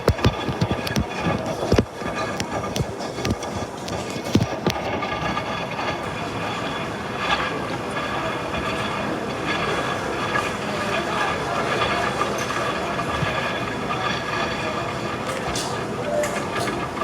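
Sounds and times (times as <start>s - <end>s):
washing machine running: 0.0s - 17.0s.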